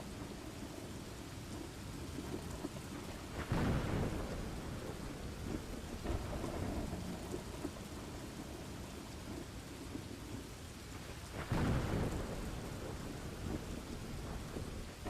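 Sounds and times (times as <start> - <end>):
soft thunder rumble: 0.0 - 15.0
steady rain: 0.0 - 15.0
loud thunderclap: 3.3 - 7.8, 11.3 - 15.0.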